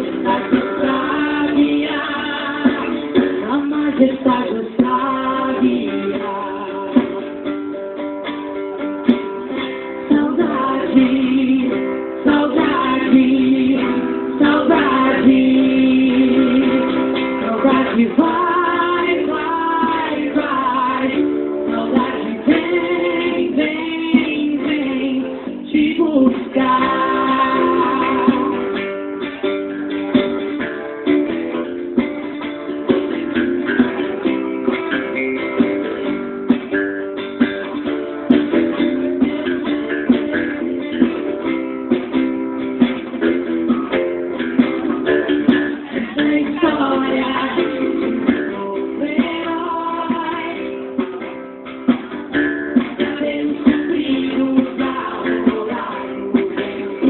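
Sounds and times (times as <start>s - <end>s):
acoustic guitar strumming: 0.0s - 57.0s.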